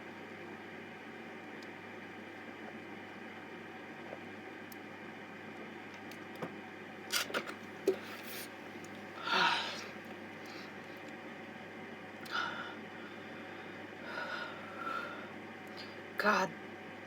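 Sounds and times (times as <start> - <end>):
person gasping for breath: 9.2 - 10.8, 12.3 - 15.3.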